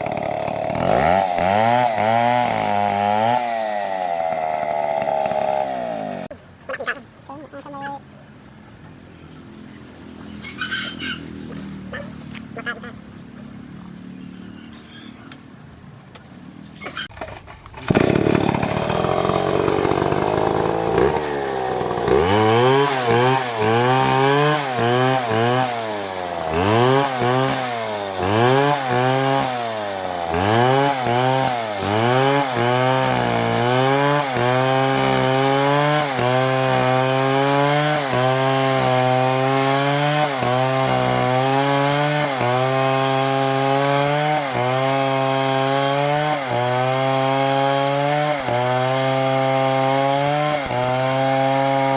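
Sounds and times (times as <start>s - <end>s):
chainsaw cutting wood: 0.0s - 6.3s, 10.6s - 14.2s, 17.1s - 51.9s
chainsaw revving: 0.0s - 6.3s, 10.0s - 14.8s, 17.7s - 51.9s.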